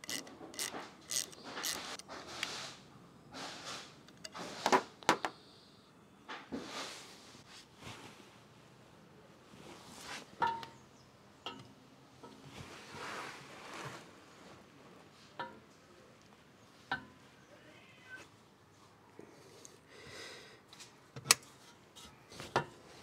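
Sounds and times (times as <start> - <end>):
metal parts clinking: 0.0 - 2.0
soft rustling: 12.4 - 14.9.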